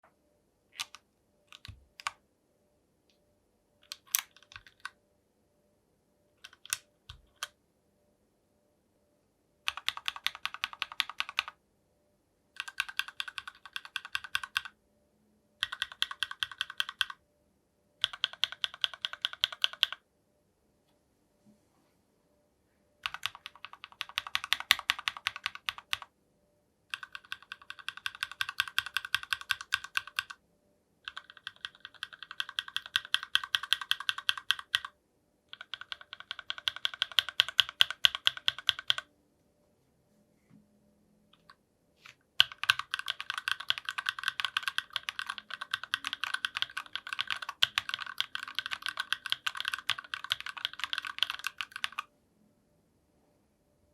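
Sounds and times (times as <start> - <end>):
mechanical keyboard typing: 0.8 - 2.2, 3.8 - 5.0, 6.4 - 7.6, 9.7 - 11.6, 12.6 - 14.8, 15.6 - 17.2, 18.0 - 20.0, 23.0 - 26.1, 26.9 - 30.4, 31.0 - 34.9, 35.5 - 39.1, 42.4 - 52.1.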